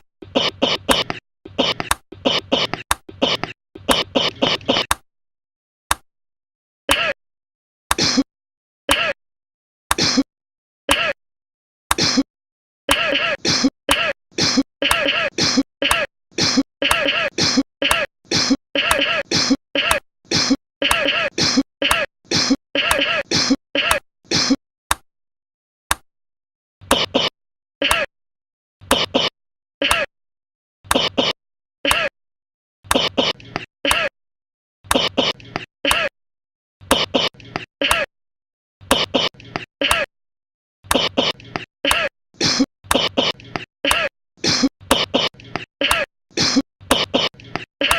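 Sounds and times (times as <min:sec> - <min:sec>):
person coughing: 0:00.2 - 0:04.9, 0:06.9 - 0:07.2, 0:07.9 - 0:08.3, 0:08.9 - 0:09.2, 0:10.0 - 0:10.3, 0:10.9 - 0:11.2, 0:11.9 - 0:12.3, 0:12.9 - 0:24.6, 0:26.9 - 0:28.1, 0:28.9 - 0:30.1, 0:30.9 - 0:32.1, 0:32.9 - 0:34.1, 0:34.9 - 0:36.2, 0:36.9 - 0:38.1, 0:38.9 - 0:40.1, 0:40.9 - 0:47.9.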